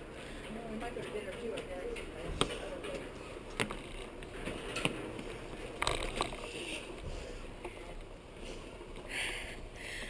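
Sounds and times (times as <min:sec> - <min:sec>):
bicycle rattling: 0:03.3 - 0:07.0.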